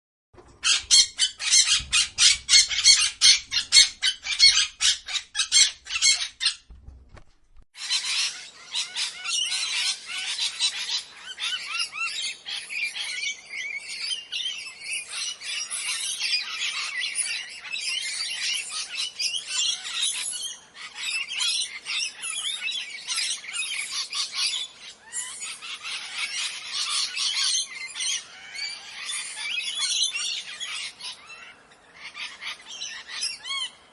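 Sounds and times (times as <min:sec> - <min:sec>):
parrots squawking: 0:00.5 - 0:06.7, 0:07.8 - 0:13.2, 0:20.8 - 0:33.8.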